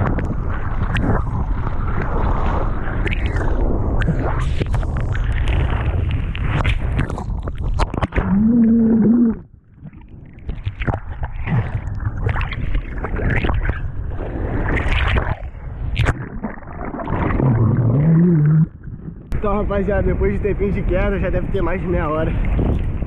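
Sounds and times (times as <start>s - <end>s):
wind buffeting microphone: 0.0s - 8.3s, 18.7s - 23.0s
seawater splashing and sloshing: 9.7s - 19.3s.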